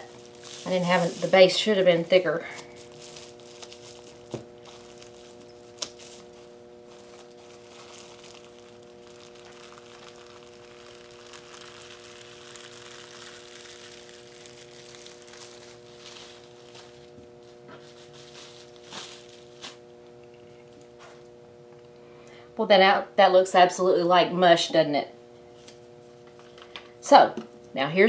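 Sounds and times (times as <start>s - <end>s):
bubble wrap crinkling in paint: 0.0s - 21.2s
electrical hum: 0.0s - 28.0s.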